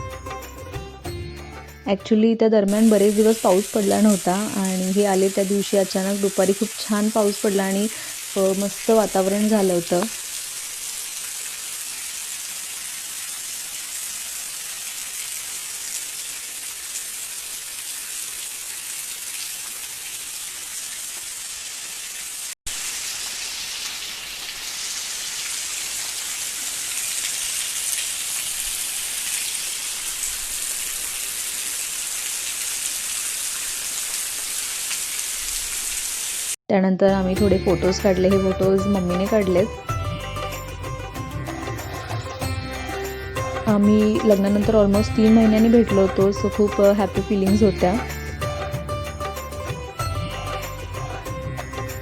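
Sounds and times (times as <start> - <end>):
heavy rain falling: 2.8 - 36.6.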